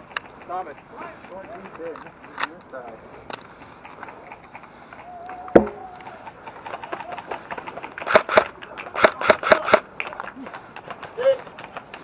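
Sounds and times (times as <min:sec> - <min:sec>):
airsoft rifles firing: 0:08.0 - 0:09.9.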